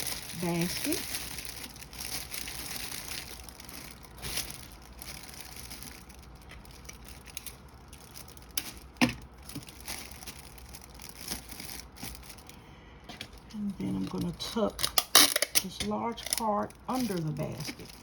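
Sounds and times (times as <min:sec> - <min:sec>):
gift wrap rustling and crinkling: 0:00.0 - 0:12.6, 0:13.2 - 0:18.0.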